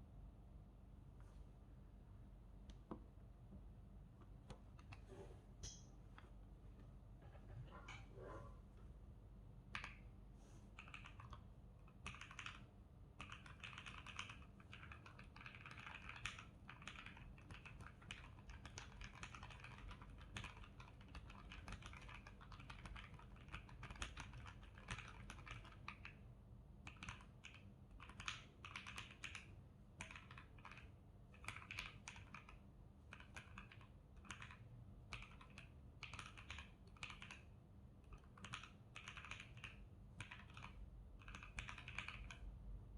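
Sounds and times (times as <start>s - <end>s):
typing on mechanical keyboard: 10.8s - 26.2s, 26.8s - 42.5s.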